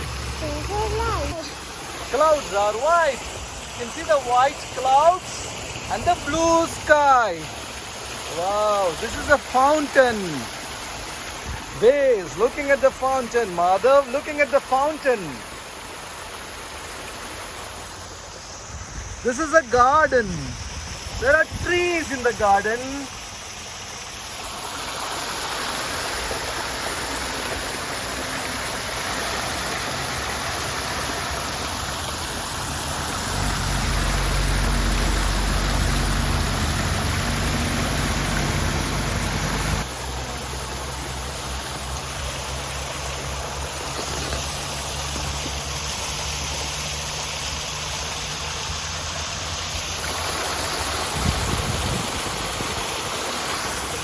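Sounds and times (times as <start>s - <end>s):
vehicle engine running: 0.0s - 2.3s, 30.5s - 50.8s
fountain water splashing: 0.0s - 54.0s.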